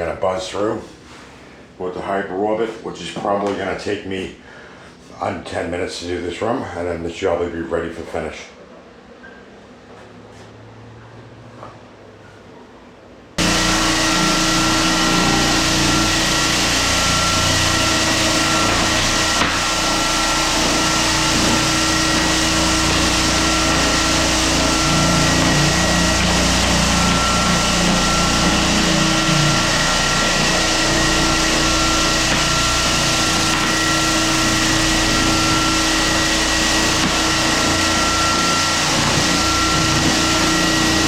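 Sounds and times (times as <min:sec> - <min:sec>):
floor sander running: 0:13.4 - 0:41.0.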